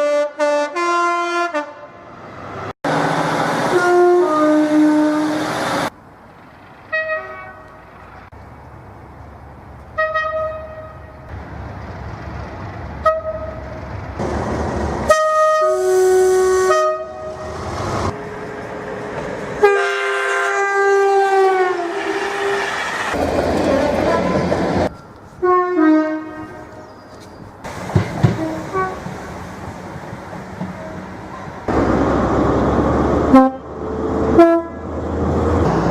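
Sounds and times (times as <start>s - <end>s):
train horn toots: 0.0s - 1.9s, 3.7s - 5.5s, 6.9s - 7.8s, 10.0s - 11.2s, 13.0s - 13.6s, 15.1s - 17.6s, 19.6s - 22.8s, 25.4s - 26.8s, 28.3s - 29.1s, 33.3s - 33.7s, 34.3s - 34.9s
two-tone train horn: 0.0s - 1.9s, 3.7s - 5.5s, 6.9s - 7.8s, 10.0s - 11.2s, 13.0s - 13.6s, 15.1s - 17.6s, 19.6s - 22.7s, 25.4s - 26.8s, 28.3s - 29.1s, 33.3s - 33.7s, 34.3s - 34.9s
long train horn blast: 0.0s - 2.0s, 3.7s - 5.6s, 6.9s - 7.8s, 10.0s - 11.2s, 13.0s - 13.6s, 15.0s - 18.6s, 19.6s - 23.2s, 25.4s - 26.8s, 28.2s - 29.1s, 33.3s - 35.0s
rumbling train noise: 2.1s - 35.9s.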